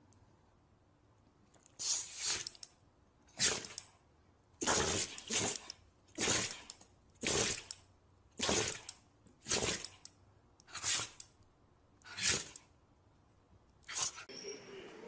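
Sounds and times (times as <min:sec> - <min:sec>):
animal sneezing: 0:01.8 - 0:02.4, 0:10.7 - 0:11.2.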